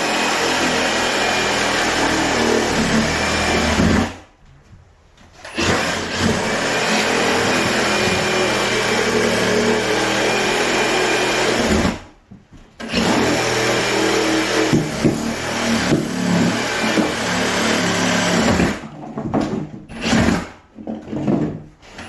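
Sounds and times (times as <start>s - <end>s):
power saw cutting: 0.0s - 4.2s, 5.5s - 12.1s, 12.8s - 18.8s.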